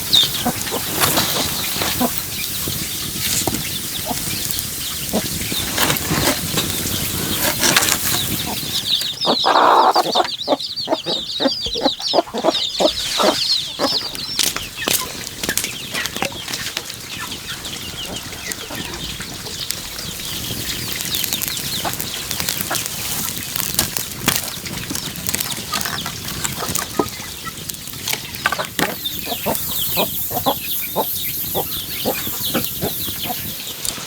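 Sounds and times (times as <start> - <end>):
chickens clucking: 0.0 - 34.0
rapid high chirping: 6.5 - 15.0, 28.8 - 33.8.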